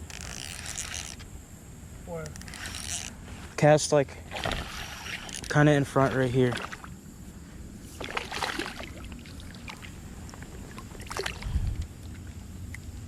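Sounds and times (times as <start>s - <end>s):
fishing reel clicks and swishes: 0.0s - 1.2s, 2.1s - 3.2s, 4.4s - 5.8s
water noise: 4.2s - 7.2s, 7.8s - 12.9s.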